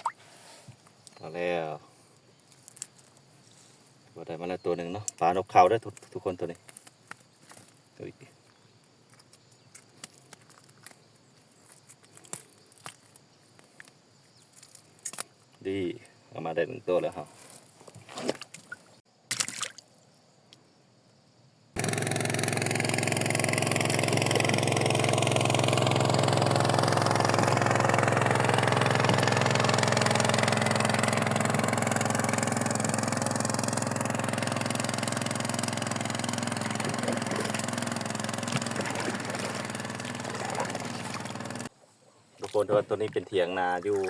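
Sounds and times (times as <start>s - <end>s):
small boat engine running: 21.8s - 41.7s.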